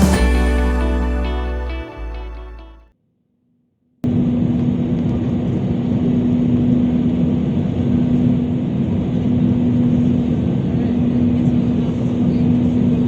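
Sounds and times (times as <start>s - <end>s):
background music: 0.0s - 2.9s.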